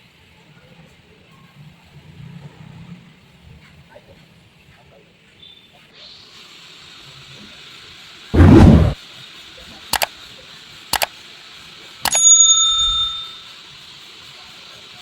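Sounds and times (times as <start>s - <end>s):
loud thump: 8.4s - 9.0s
bell-like ding: 12.1s - 13.4s.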